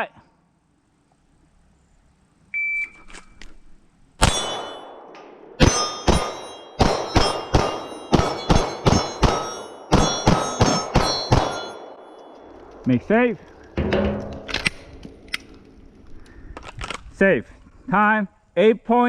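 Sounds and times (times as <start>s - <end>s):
steel plate ringing clang: 4.2s - 12.5s, 13.8s - 15.2s
pistol shots: 4.2s - 12.6s.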